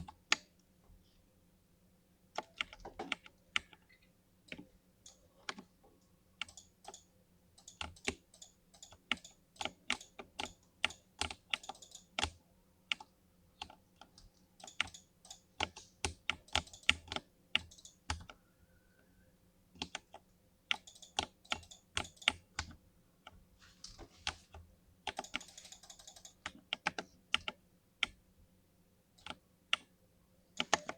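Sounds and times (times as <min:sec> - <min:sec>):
faint steady hum: 0:00.0 - 0:30.9
typing on mechanical keyboard: 0:02.4 - 0:05.7, 0:07.6 - 0:18.4, 0:19.8 - 0:22.7, 0:25.1 - 0:28.2, 0:30.6 - 0:30.9.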